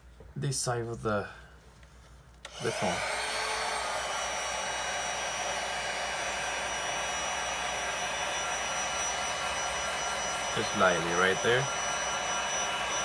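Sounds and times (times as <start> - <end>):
heat gun blowing air: 2.4 - 13.0
faint high whine: 7.0 - 13.0.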